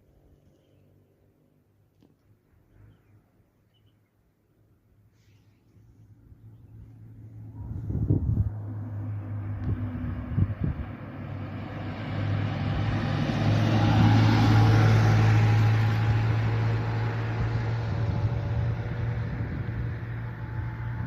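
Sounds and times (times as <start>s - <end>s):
motor vehicle running: 6.3s - 21.0s.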